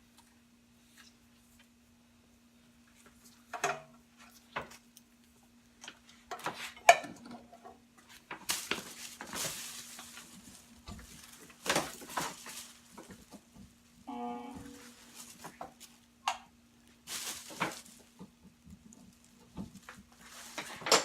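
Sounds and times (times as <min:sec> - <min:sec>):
faint steady hum: 0:00.0 - 0:21.0
packaging rustling: 0:08.3 - 0:13.6, 0:14.8 - 0:16.0, 0:17.0 - 0:18.4.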